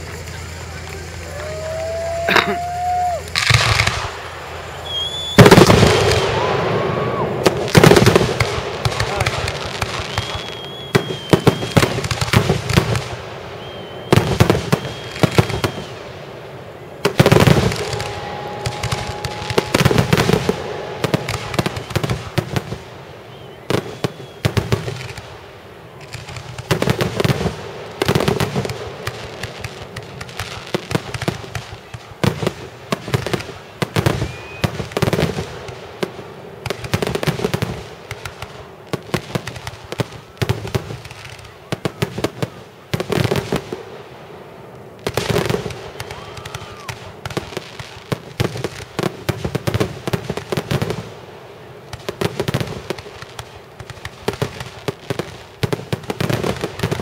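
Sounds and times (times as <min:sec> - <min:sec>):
firework whistles: 0:00.0 - 0:35.8, 0:45.1 - 0:51.0
fireworks booming: 0:00.0 - 0:57.0
fireworks crackling: 0:00.0 - 0:57.0.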